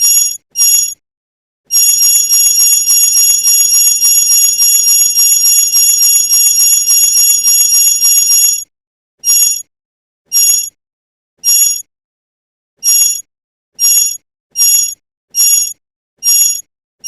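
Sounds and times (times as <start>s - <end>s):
small metal bell trilling: 0.0s - 1.0s, 1.7s - 8.6s, 9.2s - 9.6s, 10.3s - 10.7s, 12.8s - 13.2s, 13.8s - 16.6s.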